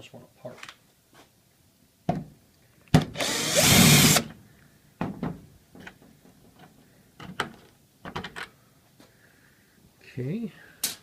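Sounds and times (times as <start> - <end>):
power drill spinning: 3.2 - 4.3.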